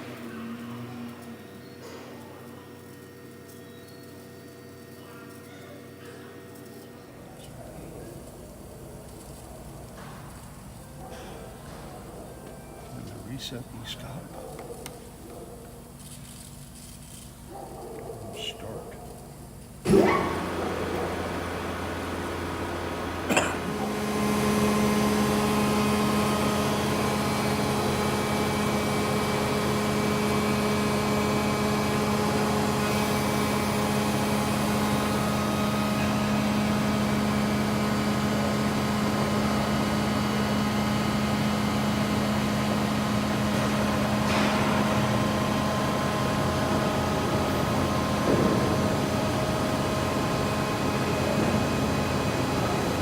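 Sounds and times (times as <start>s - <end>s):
hydraulic pump humming: 0.0s - 53.0s.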